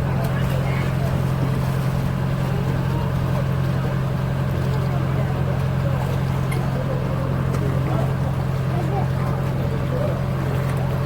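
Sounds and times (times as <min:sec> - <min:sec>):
motorboat engine droning: 0:00.0 - 0:11.0.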